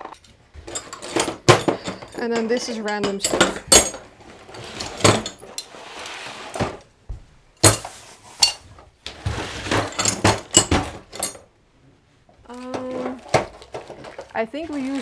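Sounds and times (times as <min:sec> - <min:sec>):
metal screws clinking: 0:00.1 - 0:05.8, 0:07.6 - 0:08.6, 0:09.7 - 0:11.4.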